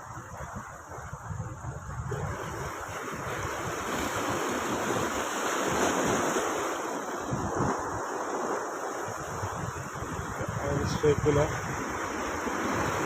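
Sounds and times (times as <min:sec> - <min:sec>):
sea surf washing in: 0:00.0 - 0:13.0
wind buffeting microphone: 0:00.0 - 0:13.0.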